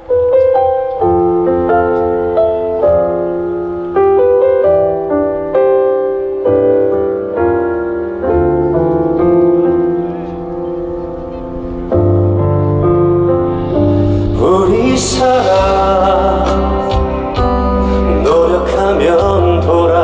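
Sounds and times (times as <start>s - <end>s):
piano playing slow chords: 0.0s - 20.0s.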